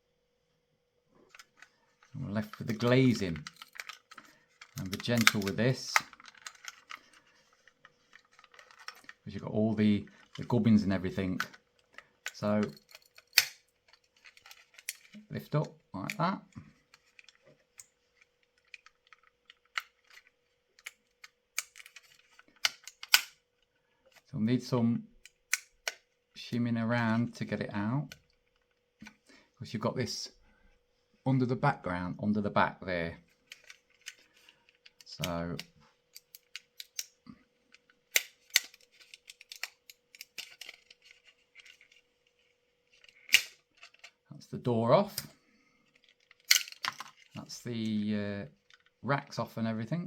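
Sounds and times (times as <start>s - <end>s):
sharp plastic snaps: 20.8s - 23.4s, 38.1s - 41.0s, 43.0s - 44.1s.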